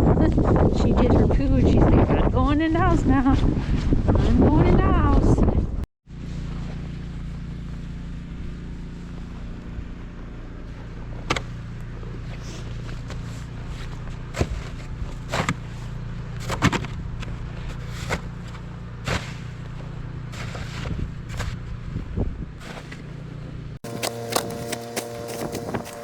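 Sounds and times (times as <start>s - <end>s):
steady low rumble: 7.7s - 26.0s
footsteps crunching in snow: 23.8s - 26.0s.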